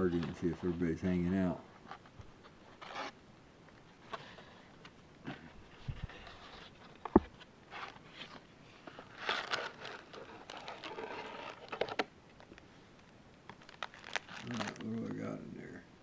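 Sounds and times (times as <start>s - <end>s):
plastic wrap and cardboard tearing: 9.0s - 12.1s, 13.5s - 15.1s.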